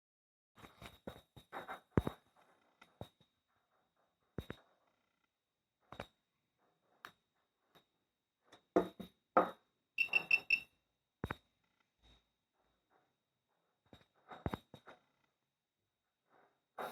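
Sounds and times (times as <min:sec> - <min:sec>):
geiger counter clicking: 0:10.0 - 0:10.6
high-pitched beeps: 0:10.0 - 0:10.6.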